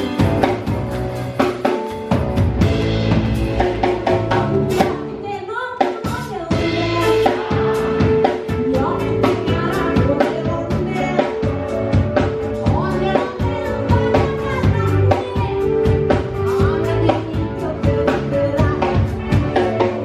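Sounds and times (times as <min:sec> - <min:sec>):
band accompaniment: 0:00.0 - 0:20.0
drum kit beat: 0:00.0 - 0:20.0
woman singing: 0:04.7 - 0:20.0.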